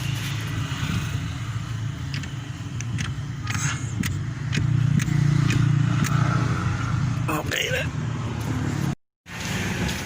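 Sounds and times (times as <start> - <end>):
engine running with pulsing hum: 0.0 - 7.3.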